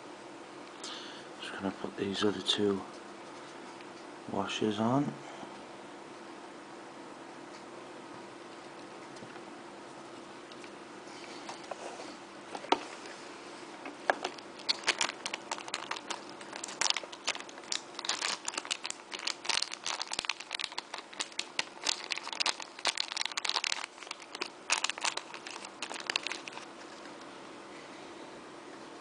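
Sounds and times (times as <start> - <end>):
rubber and plastic crackling: 13.8 - 27.1.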